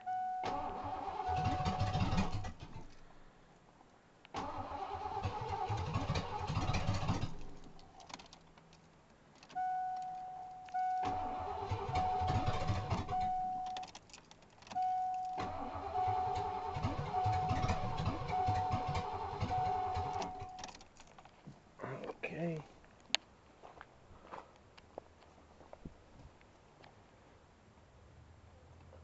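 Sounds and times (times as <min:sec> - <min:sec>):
dashboard warning chime: 0:00.0 - 0:02.0, 0:09.6 - 0:13.9, 0:14.7 - 0:20.7
car engine cranking: 0:00.1 - 0:03.2, 0:04.3 - 0:21.2.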